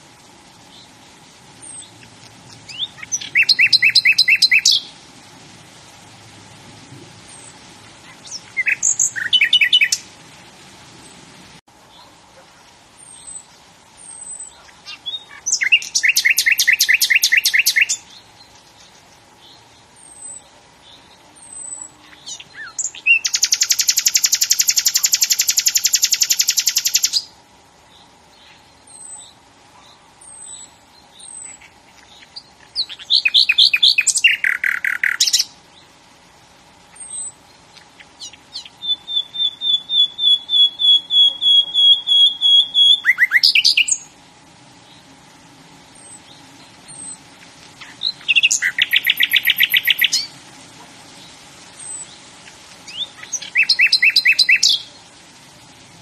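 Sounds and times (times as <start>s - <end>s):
faint high chirps: 1.6s - 5.0s, 36.9s - 44.2s, 45.9s - 55.1s
songbird singing trilled phrases: 1.6s - 5.0s, 7.3s - 10.1s, 13.0s - 27.3s, 27.9s - 29.4s, 30.2s - 35.8s, 36.9s - 44.2s, 46.0s - 50.4s, 51.2s - 55.1s.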